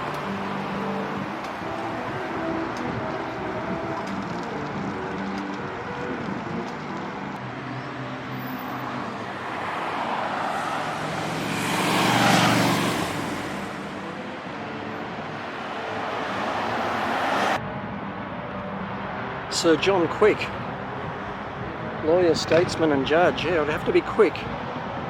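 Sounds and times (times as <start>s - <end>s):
street traffic: 0.0s - 25.0s
vehicle passing close by: 4.5s - 14.0s, 15.6s - 17.6s.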